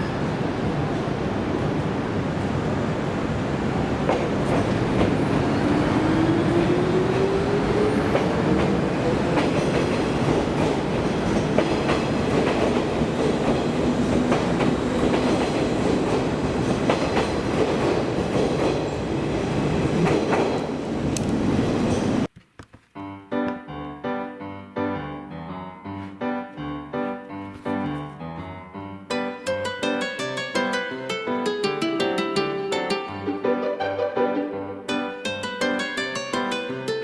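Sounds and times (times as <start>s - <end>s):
train rumbling: 0.0s - 22.3s.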